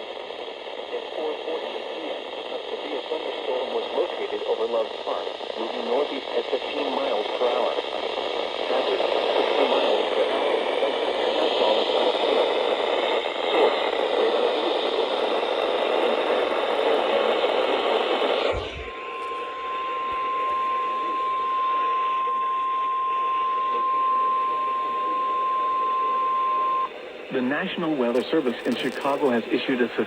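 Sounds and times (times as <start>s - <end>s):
radio static hiss: 0.0s - 30.0s
high-pitched alarm tone: 18.6s - 27.0s.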